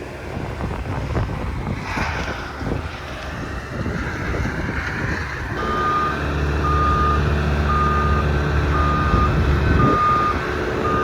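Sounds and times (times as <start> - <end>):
wind-like rush: 0.0 - 5.6, 8.8 - 11.0
backup alarm beeping: 5.6 - 11.0.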